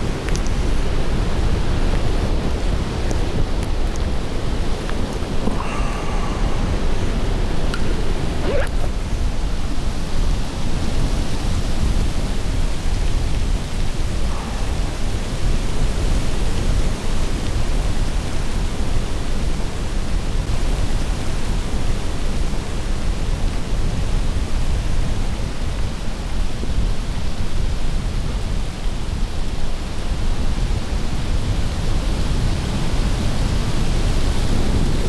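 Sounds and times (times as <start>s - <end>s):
gusty wind on microphone: 0.0s - 20.2s.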